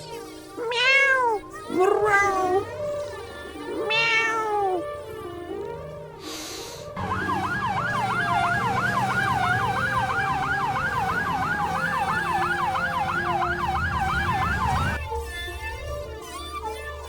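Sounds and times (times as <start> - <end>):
siren in fast yelp: 7.0 - 15.0.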